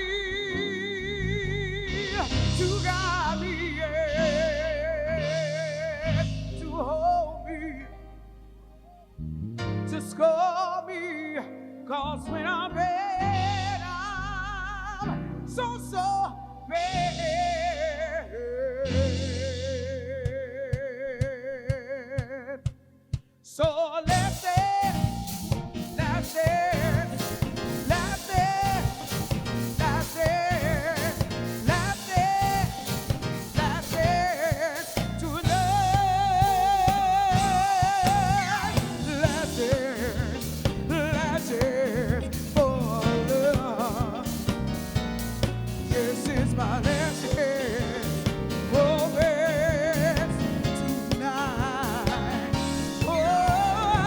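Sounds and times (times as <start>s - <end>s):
lead vocal singing: 0.0s - 8.0s, 23.4s - 54.0s
soul band playing: 0.0s - 20.4s, 24.1s - 54.0s
drums: 1.8s - 4.5s, 5.2s - 6.9s, 18.9s - 54.0s.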